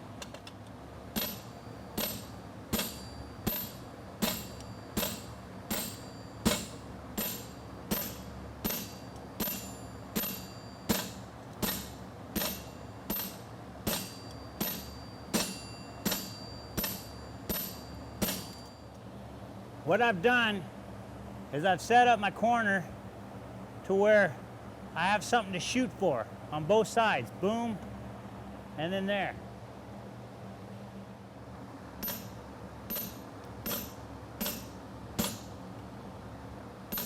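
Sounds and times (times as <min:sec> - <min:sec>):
fan hum: 0:00.0 - 0:37.0
hammer striking metal on anvil: 0:01.2 - 0:18.7, 0:32.0 - 0:35.6.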